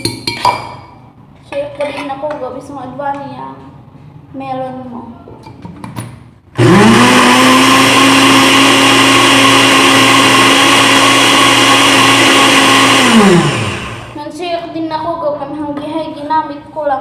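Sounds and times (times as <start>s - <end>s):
electric blender motor running: 6.6s - 14.2s.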